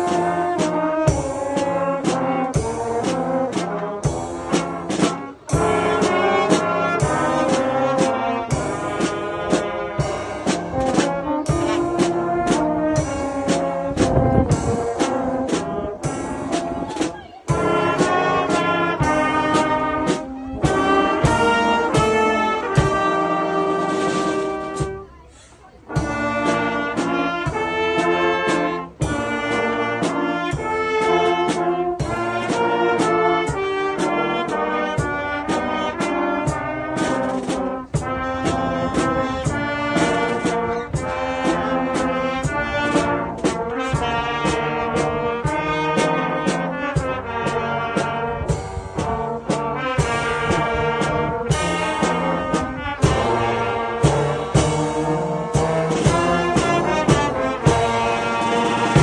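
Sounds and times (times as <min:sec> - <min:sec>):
brass band playing: 0:00.0 - 0:59.0.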